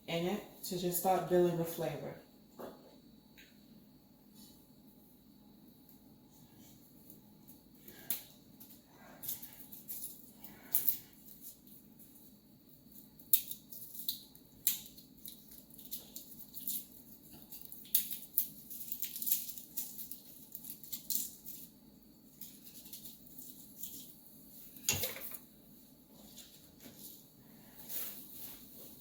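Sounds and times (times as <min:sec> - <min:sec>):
kitchen items clicking and rustling: 0:13.2 - 0:25.5.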